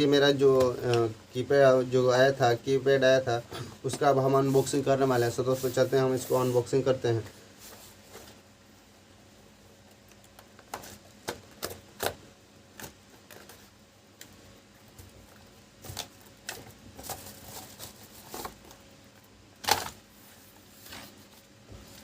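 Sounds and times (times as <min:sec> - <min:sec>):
cardboard and plastic rustling: 0:14.8 - 0:18.9.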